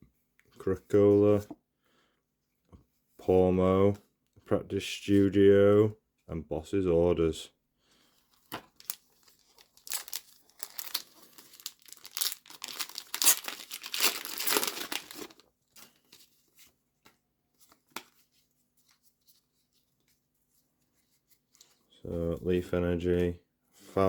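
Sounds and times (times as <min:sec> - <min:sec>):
foil wrapper tearing and crinkling: 0:08.7 - 0:15.4.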